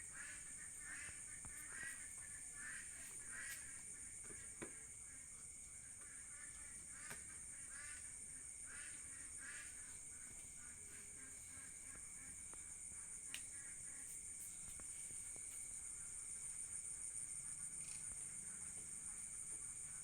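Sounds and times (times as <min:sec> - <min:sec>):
high-pitched insect drone: 0:11.4 - 0:20.0.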